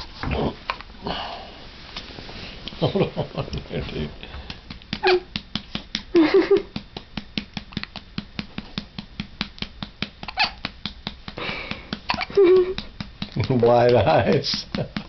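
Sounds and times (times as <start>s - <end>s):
rapid even clicking: 4.2s - 15.0s
baby hiccuping: 10.3s - 10.6s, 12.1s - 12.3s.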